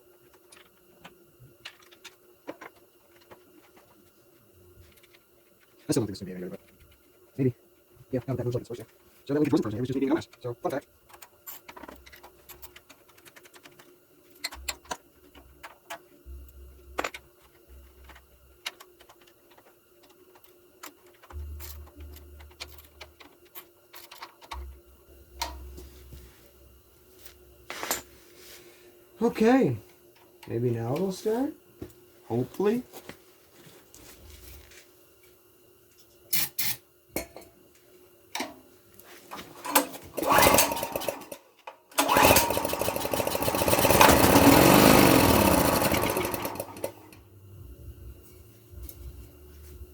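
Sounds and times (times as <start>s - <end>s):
faint steady hum: 0.0s - 42.1s, 46.6s - 49.9s
metal parts and tools clicking: 11.1s - 16.0s, 18.0s - 24.7s
generator engine cranking: 39.7s - 41.4s, 42.0s - 47.1s.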